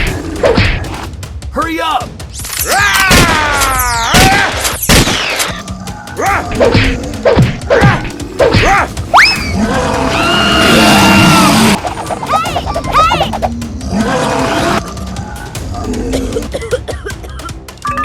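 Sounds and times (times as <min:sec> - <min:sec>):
background music: 0:00.0 - 0:18.0
sharp hits and thuds: 0:04.1 - 0:09.1.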